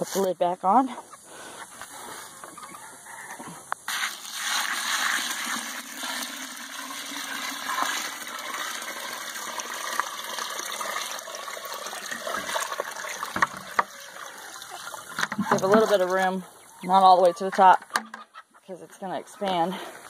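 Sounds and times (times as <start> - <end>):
water pouring into a bucket: 3.9 - 16.3.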